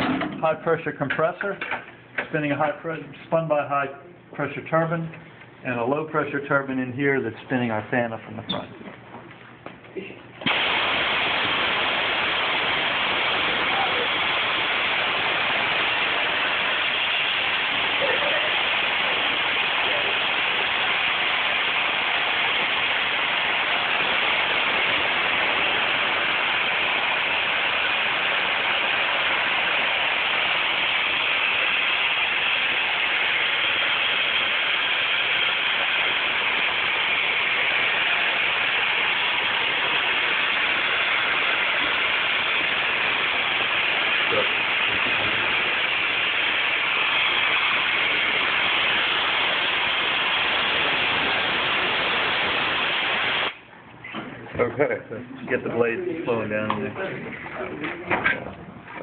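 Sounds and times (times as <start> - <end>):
air rushing through model turbofan: 10.4 - 53.6.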